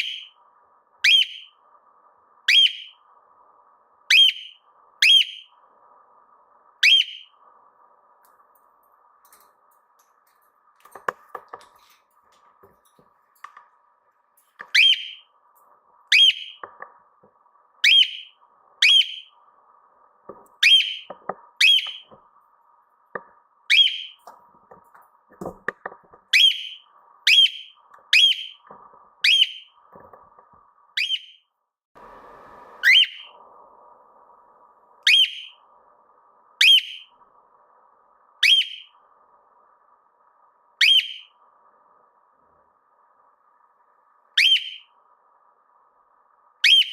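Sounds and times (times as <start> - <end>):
cockatiel whistled calls: 0.0 - 0.4, 1.0 - 1.5, 2.5 - 3.0, 4.1 - 5.5, 6.8 - 7.3, 14.7 - 15.2, 16.1 - 16.6, 17.8 - 19.3, 20.6 - 22.1, 23.7 - 24.2, 26.3 - 28.6, 29.2 - 29.7, 31.0 - 31.4, 32.8 - 33.4, 35.0 - 35.6, 36.6 - 37.1, 38.4 - 38.9, 40.8 - 41.4, 44.4 - 44.9, 46.6 - 46.9.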